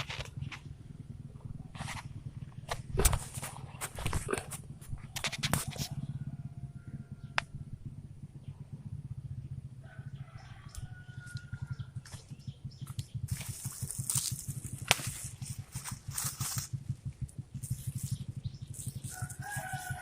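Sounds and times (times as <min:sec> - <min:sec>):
low fast rhythmic hum: 0:00.0 - 0:20.0
rooster crowing faintly: 0:05.6 - 0:07.4, 0:09.8 - 0:12.1, 0:19.0 - 0:20.0.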